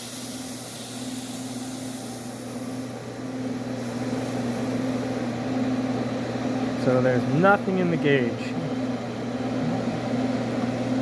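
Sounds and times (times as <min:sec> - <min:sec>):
refrigerant hissing from hose: 0:00.0 - 0:05.5
air conditioner humming: 0:00.0 - 0:11.0.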